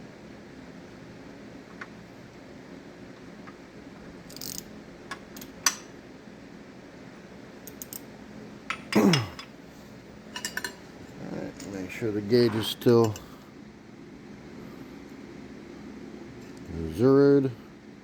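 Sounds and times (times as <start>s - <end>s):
metallic clicks of hand tools: 7.7s - 8.0s.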